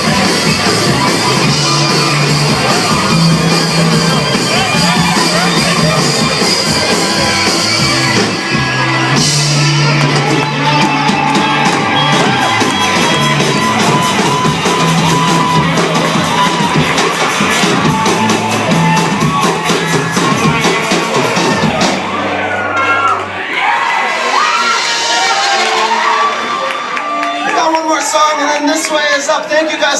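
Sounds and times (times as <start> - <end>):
drum and cymbal hits: 0.0 - 22.3
live rock band playing: 0.0 - 23.4, 24.2 - 29.3
people shouting: 0.0 - 27.7.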